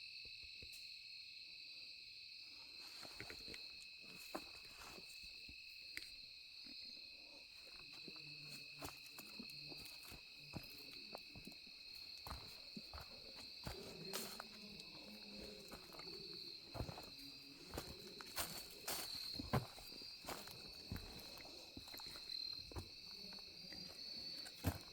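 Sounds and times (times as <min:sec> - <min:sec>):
insects chorus: 0:00.0 - 0:24.9.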